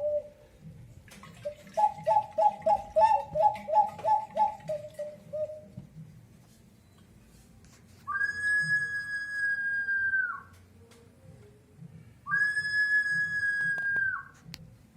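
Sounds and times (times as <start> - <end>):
ceramic whistling jar whistle: 8.0 - 10.5, 12.3 - 14.4.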